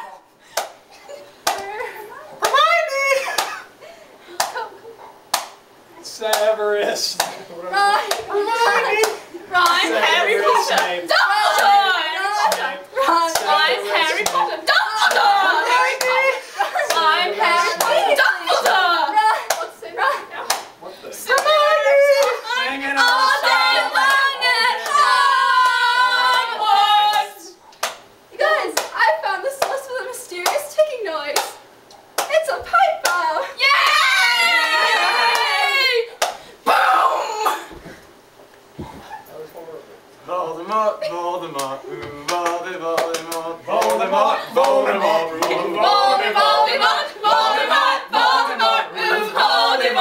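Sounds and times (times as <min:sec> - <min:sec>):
young voices singing unaccompanied: 0:07.8 - 0:19.4, 0:21.3 - 0:27.6, 0:41.5 - 0:50.0.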